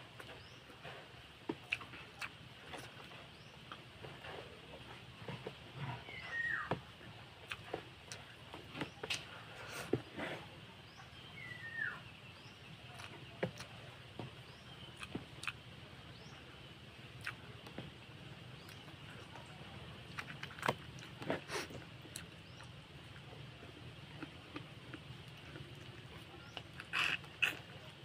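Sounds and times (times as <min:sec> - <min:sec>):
faint low hum: 0:00.0 - 0:28.0
chewing with wet clicks: 0:01.5 - 0:04.3, 0:07.4 - 0:08.4, 0:12.8 - 0:13.8, 0:14.7 - 0:15.6, 0:17.2 - 0:17.8, 0:18.6 - 0:23.3, 0:24.1 - 0:28.0.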